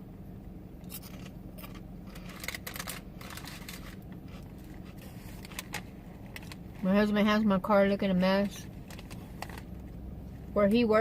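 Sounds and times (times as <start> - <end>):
low hum inside car: 0.0 - 11.0
chips crunching from bag: 0.9 - 6.6.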